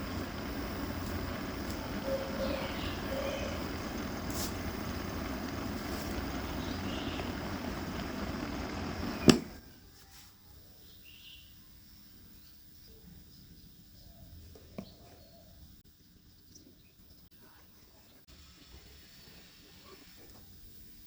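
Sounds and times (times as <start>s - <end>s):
electric fan blowing: 0.0s - 9.8s
sharp click: 9.1s - 9.6s.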